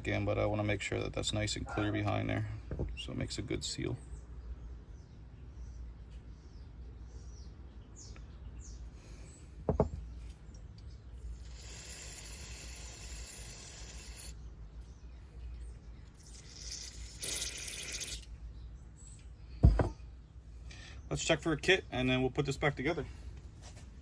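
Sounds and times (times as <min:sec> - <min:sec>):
spray can hissing: 0:11.4 - 0:14.4, 0:16.3 - 0:18.3.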